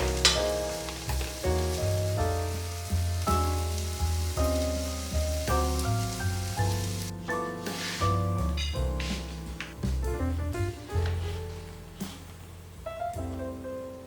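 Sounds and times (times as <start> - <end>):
food frying sizzle: 0.0 - 10.0
instrumental music with bass: 0.0 - 14.0.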